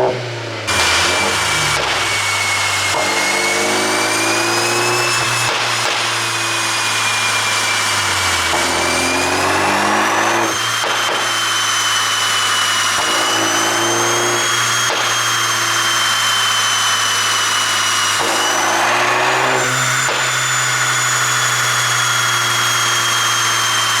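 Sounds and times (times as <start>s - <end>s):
car engine revving: 0.0s - 24.0s.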